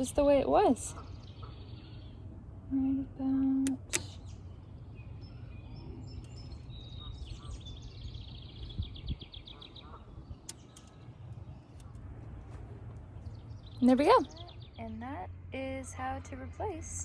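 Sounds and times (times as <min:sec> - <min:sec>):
small birds chirping: 0:00.0 - 0:17.0
steady low rumble: 0:00.0 - 0:17.0.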